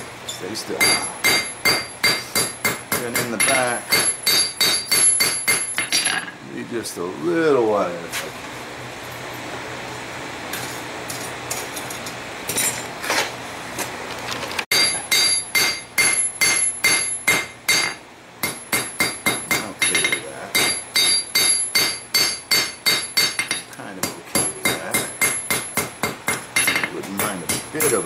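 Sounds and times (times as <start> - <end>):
anvil ringing: 0.8 - 6.3, 14.7 - 23.7
hammer striking steel on anvil: 0.8 - 6.3, 14.7 - 28.0.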